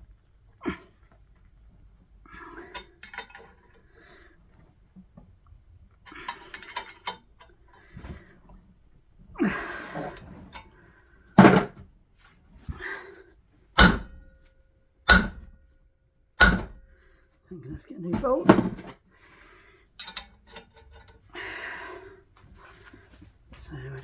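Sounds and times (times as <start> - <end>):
metal tools clattering: 6.1 - 7.2, 20.0 - 21.3
metal-on-metal strikes ringing: 13.8 - 14.2, 15.1 - 15.5, 16.4 - 16.8.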